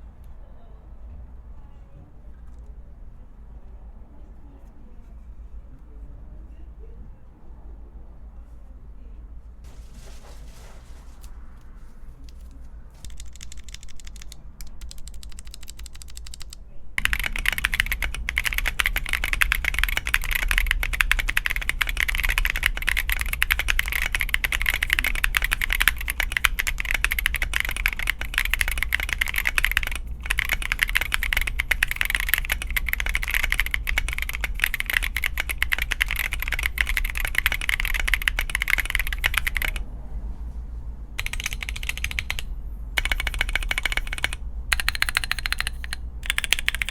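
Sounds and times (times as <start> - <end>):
typing on mechanical keyboard: 13.0 - 39.8, 41.2 - 46.9.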